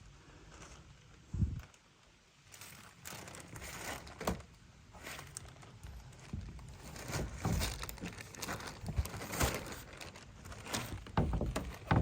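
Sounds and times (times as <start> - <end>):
rustling and crackling: 0.0 - 12.0.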